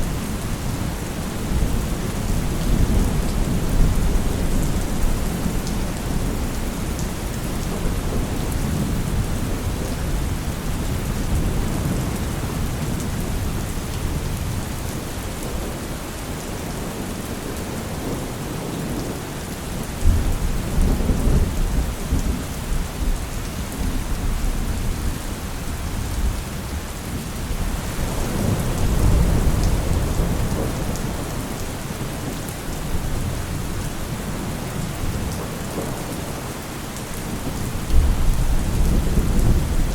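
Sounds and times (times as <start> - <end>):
heavy rain falling: 0.0 - 39.9
thunder rumbling: 37.2 - 39.9.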